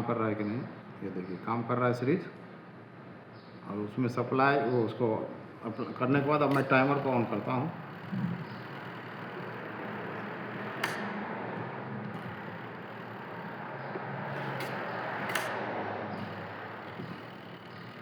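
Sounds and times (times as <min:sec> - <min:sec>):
timer dial clicks: 0:06.2 - 0:18.0.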